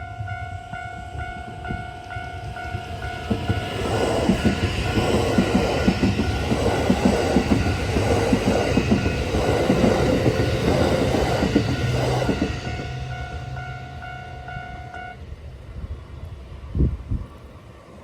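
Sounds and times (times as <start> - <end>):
level crossing warning bell: 0.0 - 15.2
train wheels clattering over rail joints: 1.7 - 13.7.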